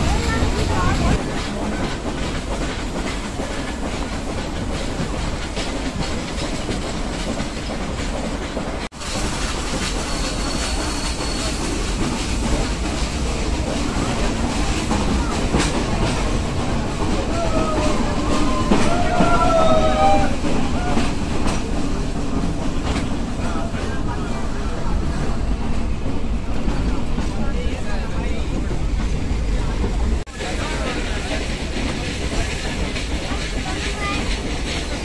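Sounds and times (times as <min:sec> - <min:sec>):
train wheels clattering on rails: 0:00.0 - 0:35.0.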